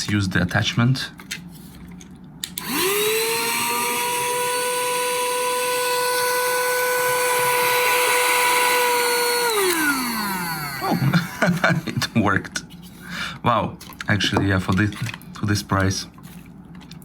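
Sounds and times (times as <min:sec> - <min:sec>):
handheld vacuum motor whine: 0:02.5 - 0:12.1.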